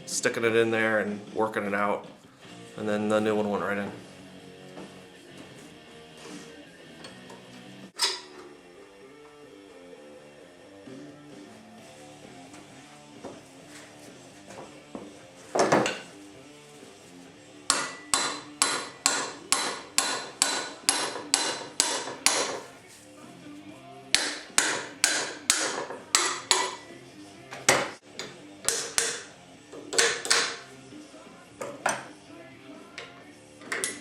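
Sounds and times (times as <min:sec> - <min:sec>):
hammer tapping: 0:17.7 - 0:22.6, 0:24.1 - 0:26.8, 0:27.7 - 0:30.6.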